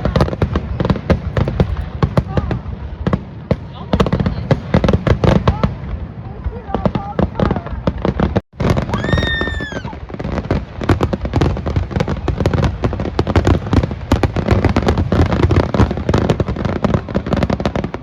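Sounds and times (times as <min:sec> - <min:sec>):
fireworks booming bursts and crackles: 0:00.0 - 0:18.0
firework whistle: 0:08.8 - 0:10.1.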